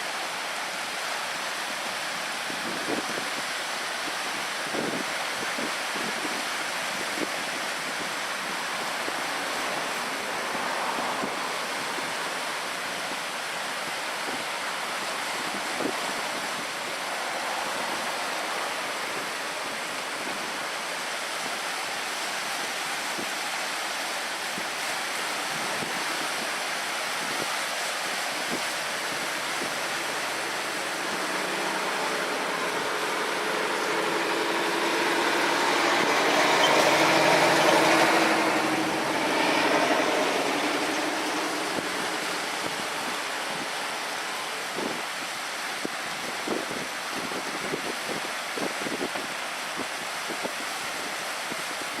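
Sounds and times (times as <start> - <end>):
sea water rushing: 0.0 - 52.0
wind: 0.0 - 52.0
low engine hum: 29.3 - 44.2.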